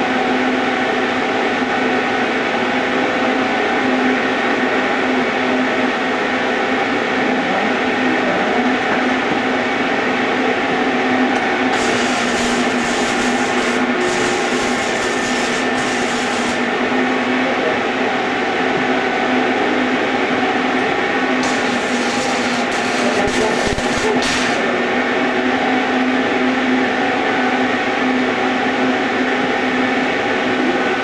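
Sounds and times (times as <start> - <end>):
constant hum: 11.4 - 17.8, 21.0 - 25.4
arc welding crackling hiss: 11.7 - 17.4, 21.4 - 24.9.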